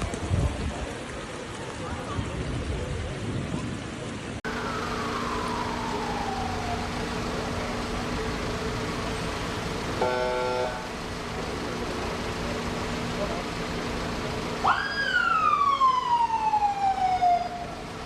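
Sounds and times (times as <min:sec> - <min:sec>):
street noise: 0:00.0 - 0:18.0
emergency siren wailing: 0:04.5 - 0:11.0, 0:14.6 - 0:18.0
horn blast: 0:09.9 - 0:11.0.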